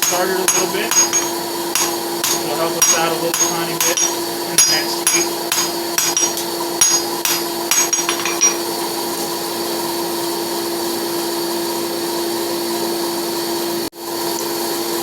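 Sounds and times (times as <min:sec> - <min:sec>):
hammer blows on anvil: 0:00.0 - 0:08.8
steady motor hum: 0:00.0 - 0:14.9.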